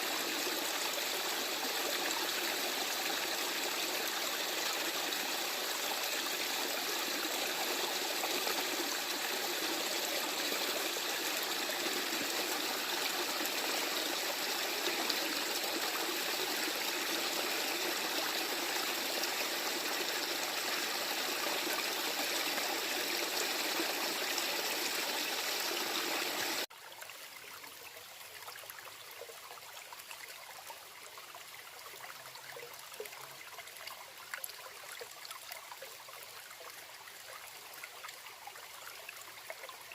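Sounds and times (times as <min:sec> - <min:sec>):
stream water rushing: 0:00.0 - 0:26.7.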